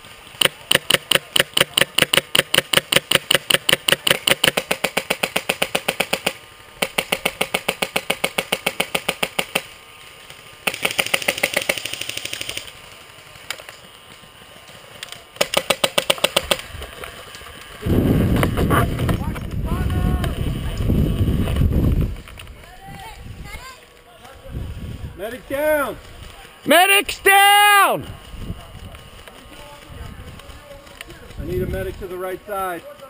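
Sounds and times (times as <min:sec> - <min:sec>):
airsoft rifle firing bursts: 0:00.3 - 0:09.7, 0:10.6 - 0:12.7, 0:15.3 - 0:16.7.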